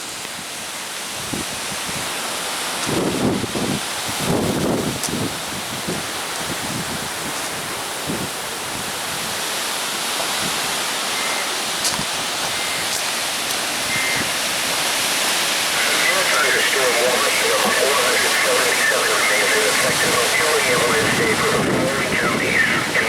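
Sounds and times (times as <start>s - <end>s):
strong wind blowing: 1.2s - 2.2s, 2.8s - 23.0s.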